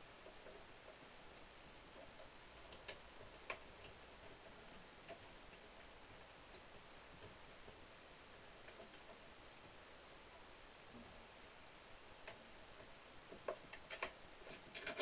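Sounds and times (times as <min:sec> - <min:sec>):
faint sharp clicks and ticks: 0:01.8 - 0:09.8, 0:12.2 - 0:15.0.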